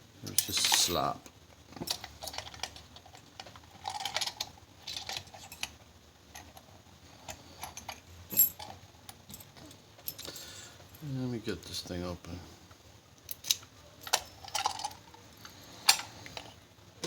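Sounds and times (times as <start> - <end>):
lock picks clicking and rattling: 1.7 - 6.7, 13.2 - 16.6.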